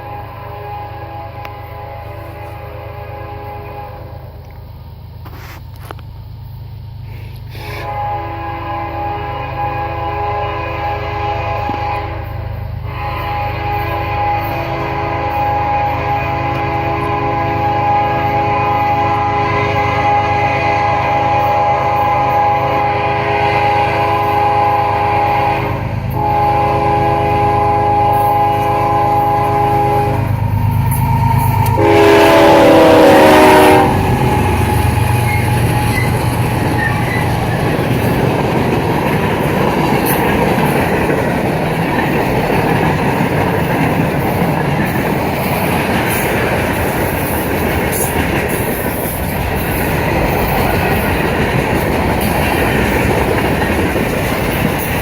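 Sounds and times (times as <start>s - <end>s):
locomotive air horn blasts: 0.0s - 4.4s, 7.1s - 41.0s
freight cars rumbling and clattering: 33.9s - 55.0s.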